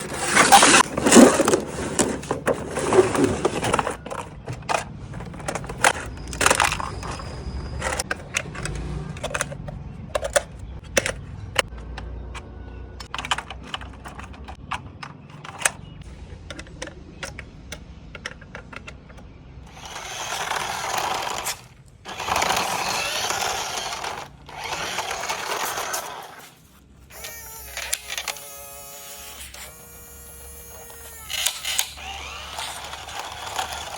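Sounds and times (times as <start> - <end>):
plastic clicks and taps: 16.4 - 19.3
loud crinkling or tearing: 20.1 - 27.3.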